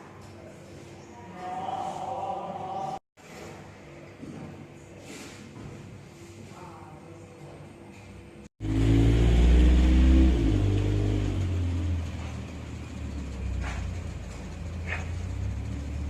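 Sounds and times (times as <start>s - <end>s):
vehicle engine running loudly: 8.6s - 16.0s.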